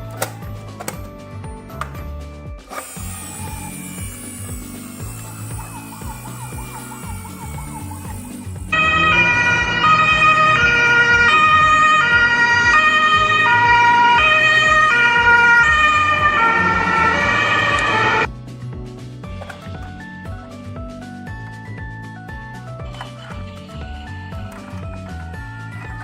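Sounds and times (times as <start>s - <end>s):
two-tone ambulance siren: 8.7s - 18.3s.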